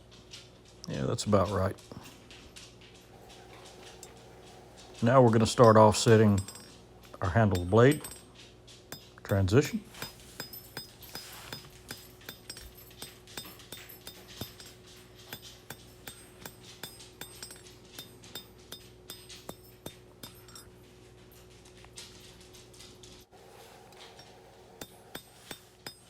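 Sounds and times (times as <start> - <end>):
faint steady hum: 0.0 - 26.0
hammer striking metal on anvil: 5.3 - 8.2, 8.9 - 20.7, 23.9 - 26.0.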